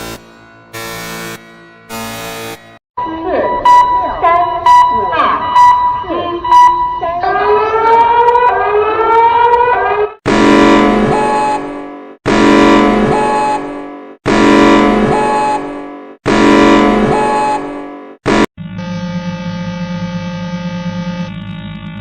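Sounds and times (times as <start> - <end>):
harsh blaring alarm tone: 0.0 - 22.0
rising siren tone: 2.0 - 11.8, 18.6 - 22.0.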